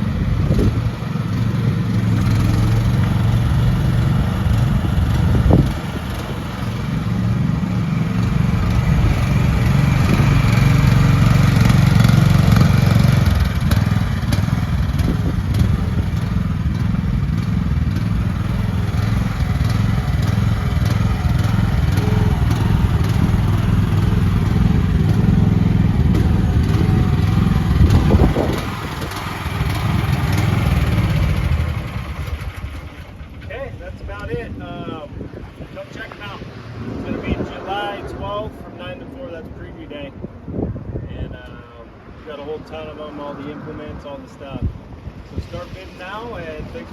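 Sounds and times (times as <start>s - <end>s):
small gas engine running: 0.0s - 37.2s.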